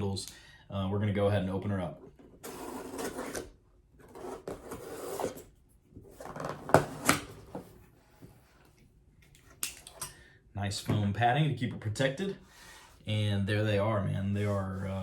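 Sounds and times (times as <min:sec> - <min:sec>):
cardboard rustling and scraping: 0:02.2 - 0:08.8.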